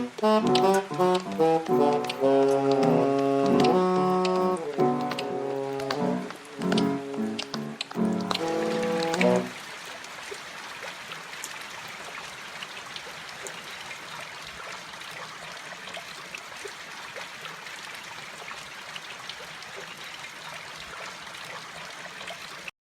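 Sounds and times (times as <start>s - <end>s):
raindrops ticking: 0.0s - 10.4s
steady rain: 0.0s - 22.7s
water trickling: 0.0s - 22.7s.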